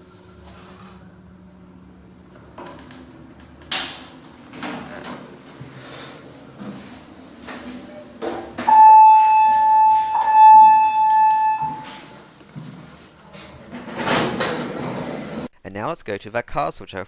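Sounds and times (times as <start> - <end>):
loud high buzzer beep: 8.7 - 12.0.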